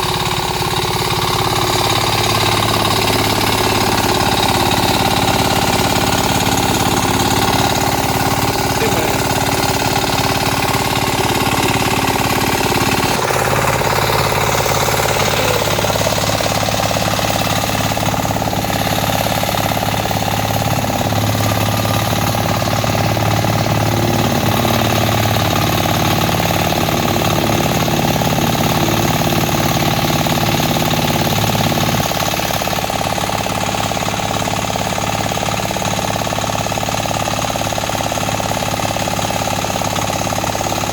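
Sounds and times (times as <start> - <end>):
tractor engine running under load: 0.0 - 40.9.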